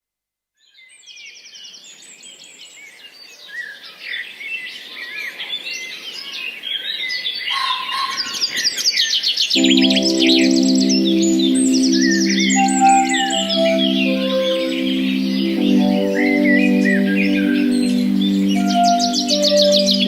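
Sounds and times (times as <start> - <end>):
songbirds singing: 0.6 - 20.0
low musical chord: 9.6 - 20.0.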